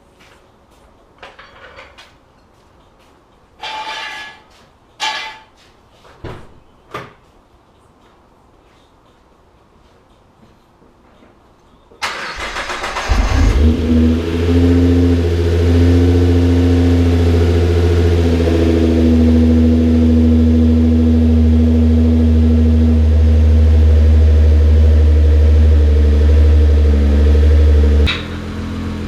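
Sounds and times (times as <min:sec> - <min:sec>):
car engine revving and idling: 0:12.5 - 0:29.0.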